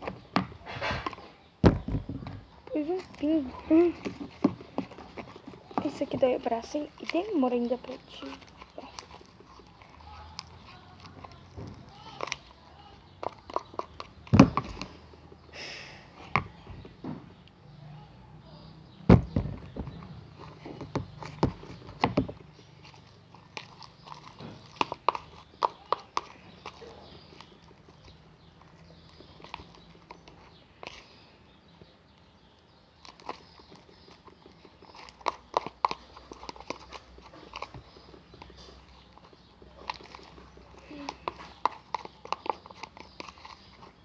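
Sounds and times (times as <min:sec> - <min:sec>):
spoon stirring slime: 0:02.8 - 0:15.4, 0:20.3 - 0:31.6, 0:32.8 - 0:44.0.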